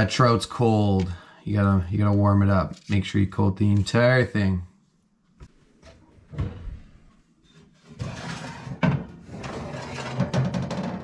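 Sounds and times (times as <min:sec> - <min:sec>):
objects knocking and clattering: 0:07.8 - 0:11.0.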